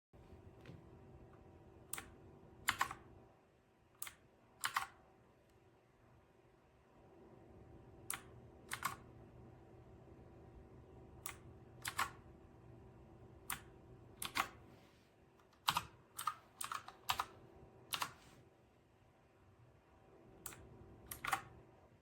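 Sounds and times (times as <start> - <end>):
faint steady hum: 0.2 - 22.0
mechanical keyboard keystrokes: 2.0 - 3.1, 4.0 - 5.0, 8.1 - 9.1, 11.2 - 12.2, 13.5 - 14.6, 15.5 - 18.2, 20.5 - 21.6.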